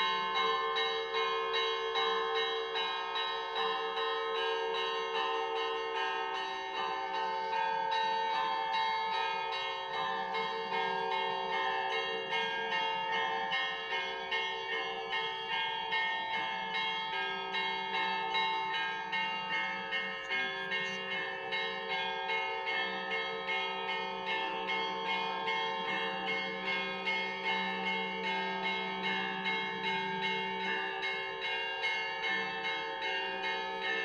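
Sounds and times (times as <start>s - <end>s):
large bells ringing: 0.0s - 34.0s
small bells struck rhythmically: 0.0s - 34.0s.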